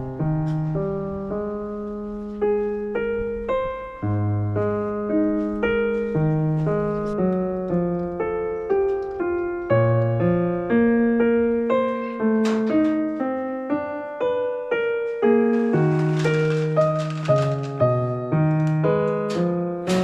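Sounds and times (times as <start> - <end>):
calm piano music: 0.0 - 20.0.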